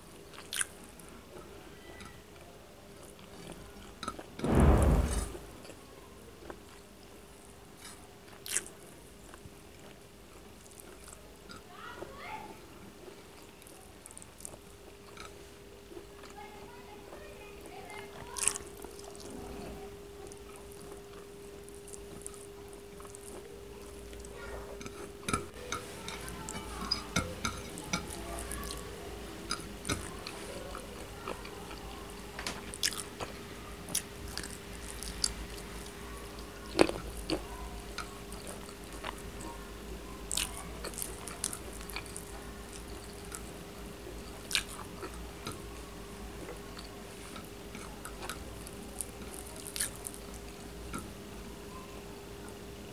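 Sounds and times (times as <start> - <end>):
faint steady hum: 0.0 - 52.9
chewing and biting food: 0.3 - 0.8, 7.8 - 11.7, 18.2 - 19.4, 20.3 - 28.8, 32.7 - 33.3, 33.9 - 39.5, 40.3 - 43.5, 44.2 - 45.8, 46.4 - 51.1.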